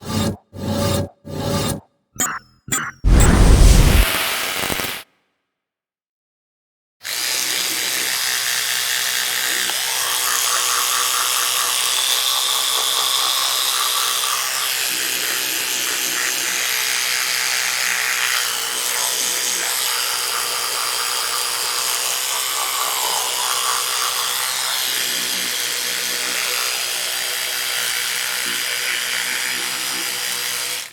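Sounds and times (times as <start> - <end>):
electric toothbrush buzzing: 7.0 - 30.9
brush scrubbing teeth: 9.9 - 25.0.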